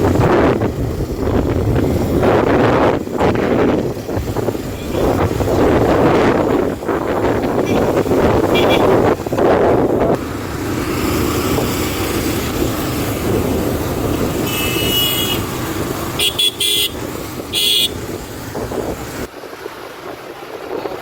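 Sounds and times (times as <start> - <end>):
road and wind rush: 0.0 - 21.0
vehicle horn honking: 8.5 - 9.0, 14.4 - 15.5, 16.2 - 18.0.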